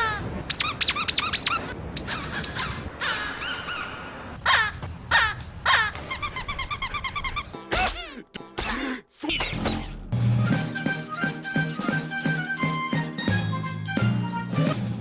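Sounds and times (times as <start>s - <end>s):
cartoon rubber toy squeaks: 0.0s - 2.8s, 5.8s - 8.2s.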